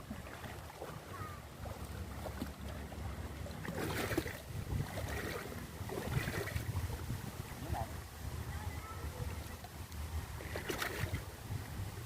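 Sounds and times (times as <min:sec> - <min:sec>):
wind buffeting microphone: 0:00.0 - 0:12.0
hissy splashy noise: 0:03.6 - 0:11.6.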